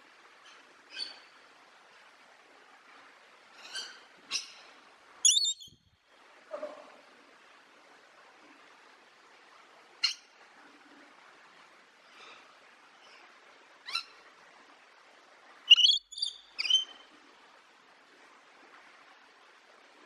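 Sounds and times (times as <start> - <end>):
parrot squawking: 5.3 - 5.6, 15.7 - 16.8.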